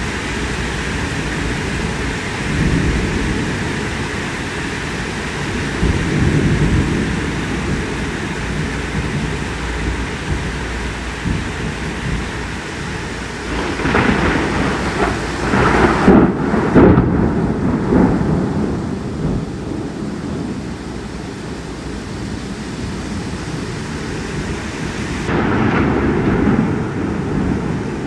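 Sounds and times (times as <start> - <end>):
heavy rain: 0.0 - 28.0
thunder cracking and rumbling: 0.0 - 28.0.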